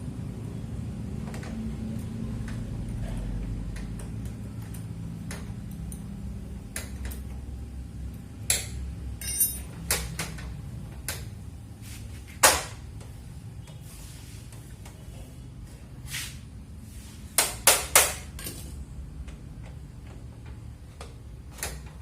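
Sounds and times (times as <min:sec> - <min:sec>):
metallic knocks and tool clicks: 0:08.4 - 0:11.3.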